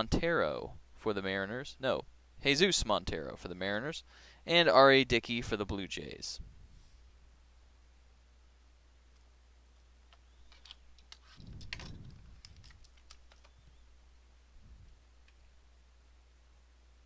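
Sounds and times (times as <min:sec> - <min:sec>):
cards and packaging clicks and crinkles: 0:10.4 - 0:13.6.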